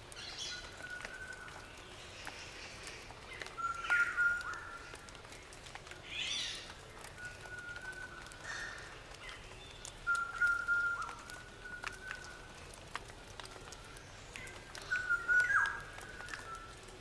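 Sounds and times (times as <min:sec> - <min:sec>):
faint sharp clicks: 0:00.1 - 0:17.0
birds whistling and chirping: 0:03.6 - 0:04.8, 0:07.2 - 0:08.3, 0:10.0 - 0:12.4, 0:14.8 - 0:16.8.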